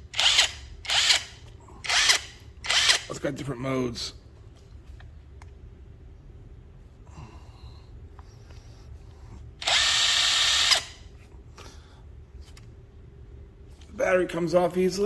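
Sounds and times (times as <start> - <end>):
impact driver motor whir: 0.1 - 3.1, 9.6 - 11.0.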